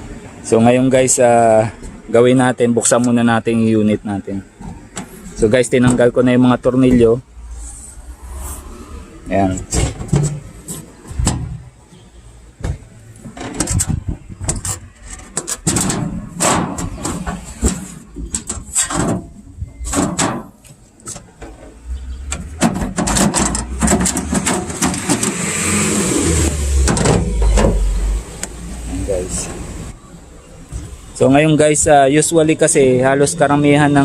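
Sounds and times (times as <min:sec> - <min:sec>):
sheet-metal cover clattering: 0:09.6 - 0:11.7, 0:12.6 - 0:25.5.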